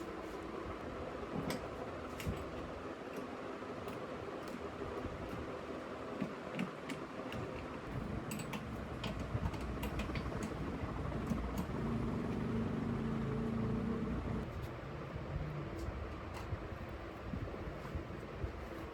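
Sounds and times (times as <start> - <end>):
machinery low hum: 7.8 - 18.9.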